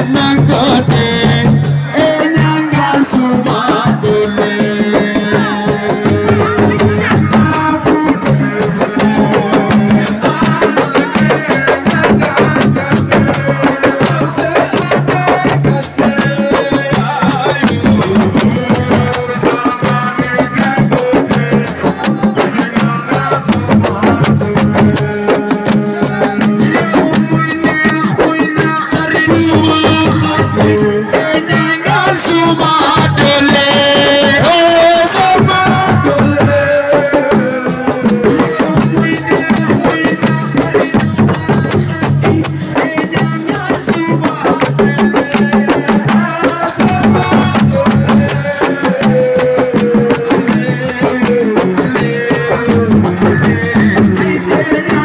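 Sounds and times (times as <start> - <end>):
rapid drumming and percussion: 0.0 - 55.0
pitched melody and bass line: 5.3 - 10.4, 46.2 - 48.6.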